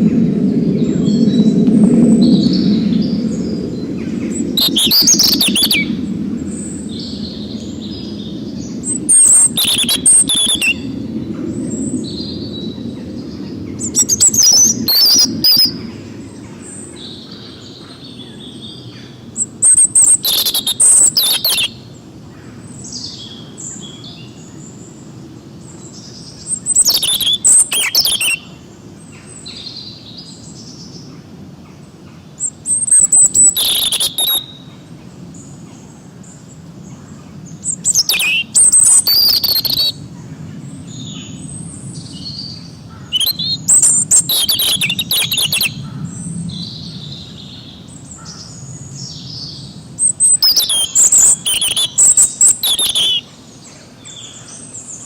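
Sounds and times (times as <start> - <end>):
low steady background noise: 0.0 - 55.0
songbirds singing: 0.0 - 55.0
bird chirps: 4.3 - 10.9, 13.8 - 15.8, 19.4 - 21.8, 25.9 - 28.5, 32.4 - 34.6, 37.6 - 40.0, 40.9 - 53.3.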